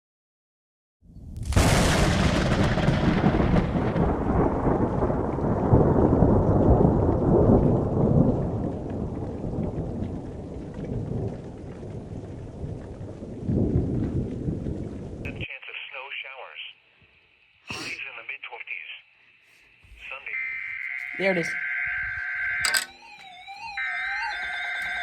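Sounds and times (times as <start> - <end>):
rolling thunder rumble: 1.2 - 15.3
thunderclap: 1.2 - 15.3.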